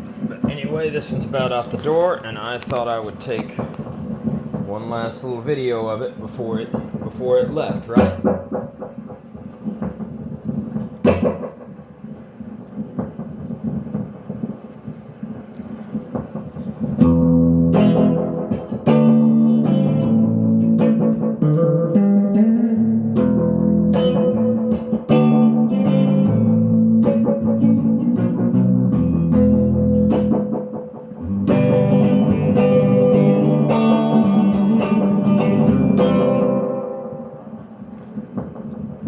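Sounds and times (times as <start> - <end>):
electric guitar with echo: 6.2 - 14.5, 16.2 - 39.0.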